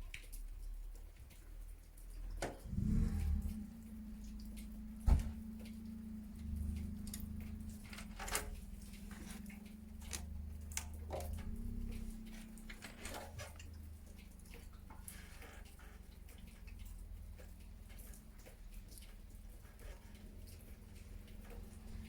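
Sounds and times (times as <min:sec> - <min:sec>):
steady low hum: 0:02.0 - 0:22.0.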